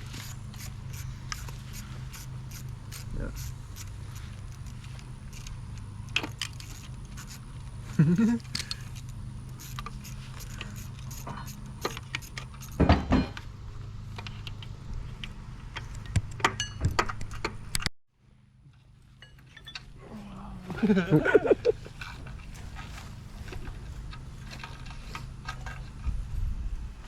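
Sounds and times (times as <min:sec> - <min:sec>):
steady low hum: 0:00.0 - 0:27.0
metal tools clinking and rattling: 0:06.1 - 0:13.5, 0:19.1 - 0:19.9
loud metal clunk: 0:12.8 - 0:13.4.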